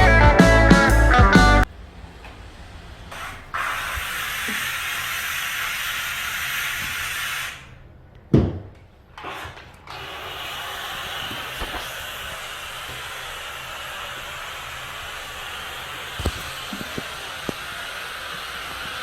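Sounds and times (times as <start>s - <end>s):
steam cleaner hissing spray: 3.2s - 7.7s, 10.0s - 19.0s.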